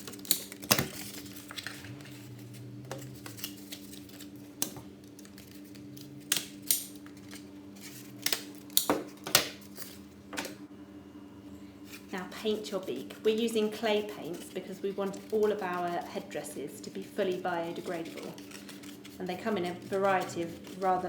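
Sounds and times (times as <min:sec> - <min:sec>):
card being handled: 0:00.0 - 0:10.0, 0:17.8 - 0:19.2
faint low hum: 0:00.8 - 0:08.7, 0:09.8 - 0:21.0.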